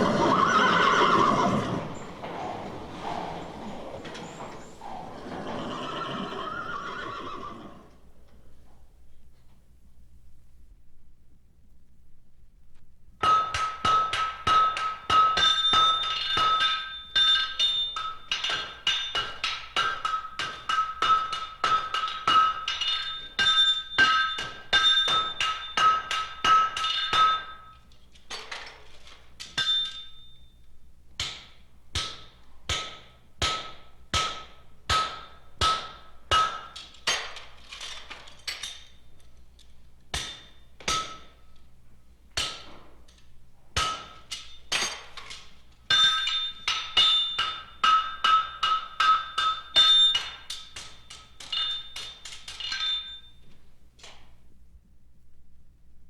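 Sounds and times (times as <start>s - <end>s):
hammer striking horseshoe on anvil: 13.2s - 28.8s, 29.4s - 30.4s, 31.2s - 39.0s, 40.1s - 41.6s, 42.3s - 53.4s.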